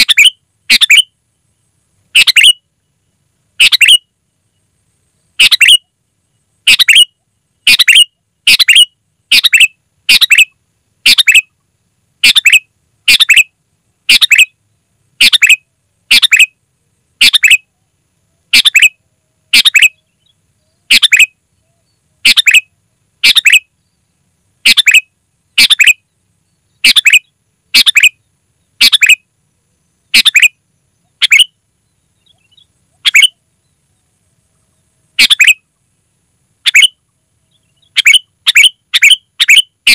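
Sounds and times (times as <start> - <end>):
bird giving short loud calls: 7.7 - 11.5.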